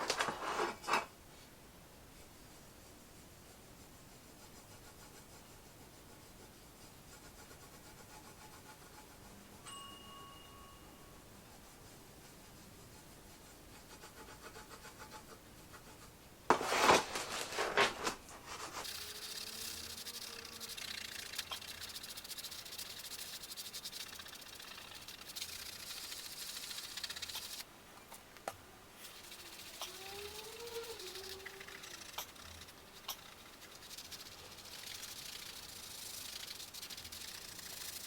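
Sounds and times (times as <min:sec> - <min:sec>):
cloth rubbing on metal plate: 0:16.5 - 0:27.6, 0:29.0 - 0:38.0.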